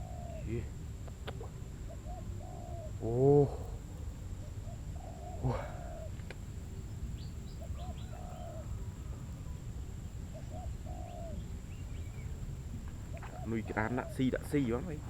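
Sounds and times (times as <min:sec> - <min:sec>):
low bird calls: 0:00.0 - 0:15.0
steady low rumble: 0:05.4 - 0:15.0.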